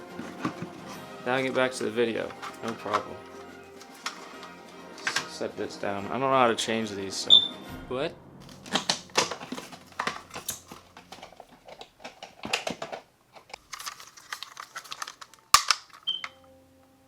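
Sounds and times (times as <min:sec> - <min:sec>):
plastic clicking and rustling: 0:00.0 - 0:05.4, 0:08.4 - 0:16.4
smoke alarm chirp: 0:16.0 - 0:16.4.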